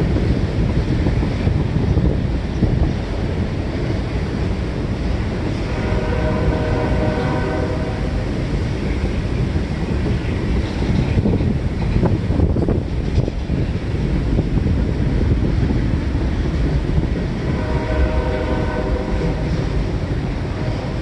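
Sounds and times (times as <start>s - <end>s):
freight train rumbling: 0.0s - 21.0s
wind on microphone: 0.0s - 21.0s
locomotive air horn blast: 5.7s - 8.2s, 17.5s - 19.5s.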